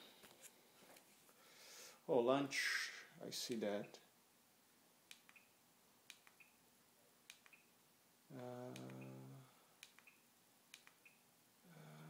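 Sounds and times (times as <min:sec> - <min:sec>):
clicks with high chirps: 0:05.1 - 0:06.6, 0:07.3 - 0:07.7, 0:08.7 - 0:11.2
low steady tone: 0:08.3 - 0:10.2.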